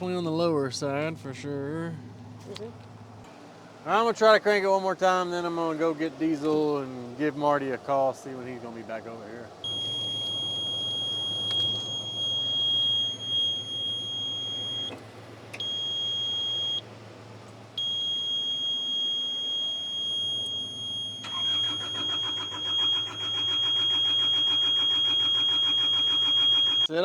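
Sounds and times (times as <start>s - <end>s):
diesel engine starter cranking: 0.0s - 27.0s
high warning buzzer beep: 9.7s - 14.9s, 15.6s - 16.8s, 17.8s - 26.9s.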